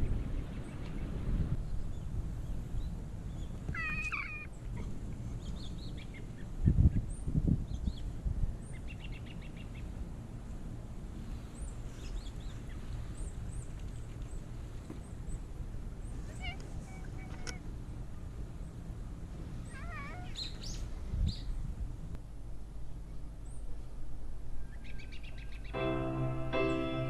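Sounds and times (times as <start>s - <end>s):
birds chirping: 19.6s - 21.6s, 24.7s - 27.0s.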